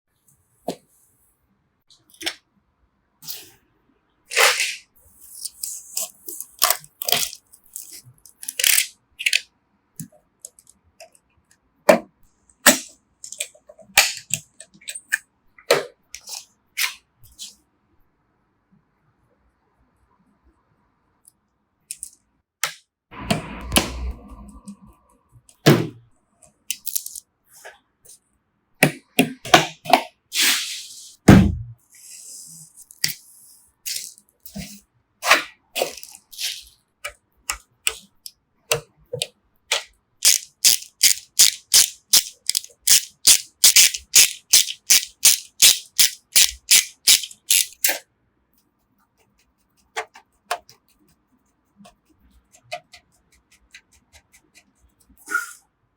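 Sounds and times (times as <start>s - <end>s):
computer parts clicking and knocking: 37.5s - 47.9s
fast even clicking: 40.2s - 47.8s.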